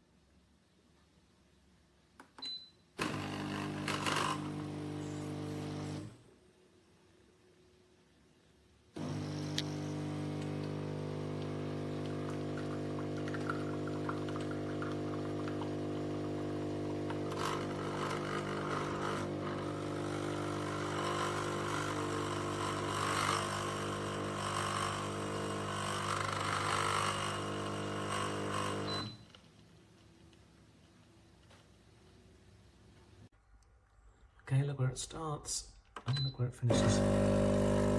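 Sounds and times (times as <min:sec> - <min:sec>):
espresso machine pump buzzing: 0:03.0 - 0:06.1, 0:09.0 - 0:29.2, 0:36.7 - 0:37.9.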